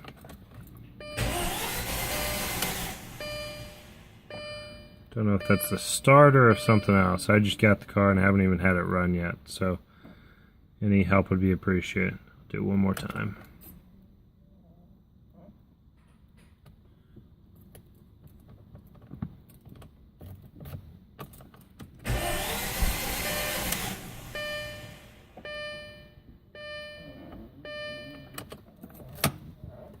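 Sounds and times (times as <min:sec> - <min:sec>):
car starter whir: 0:01.0 - 0:04.9, 0:22.0 - 0:26.0
buzzing tones: 0:22.1 - 0:26.0.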